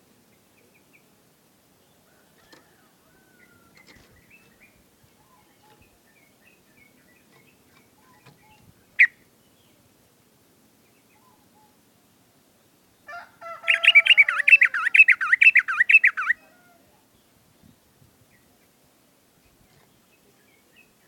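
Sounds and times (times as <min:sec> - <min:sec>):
bird chirping: 0:03.2 - 0:09.8, 0:13.7 - 0:16.5.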